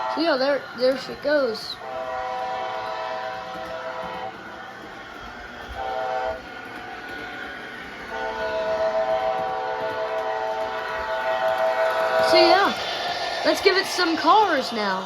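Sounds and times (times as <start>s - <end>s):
locomotive engine sound: 0.0s - 15.0s
model train horn blasts: 1.8s - 4.3s, 5.7s - 6.5s, 8.1s - 12.8s.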